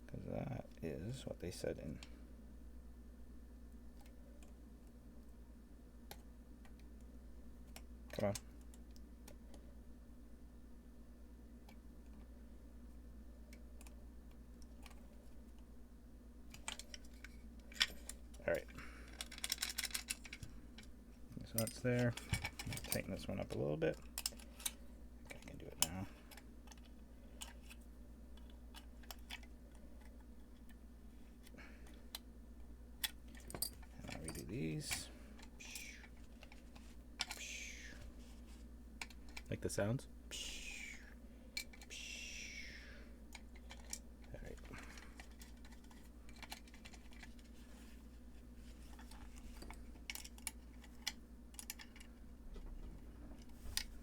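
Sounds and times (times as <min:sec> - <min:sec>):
steady low hum: 0:00.0 - 0:54.0
small clicks of metal hardware: 0:19.1 - 0:20.4.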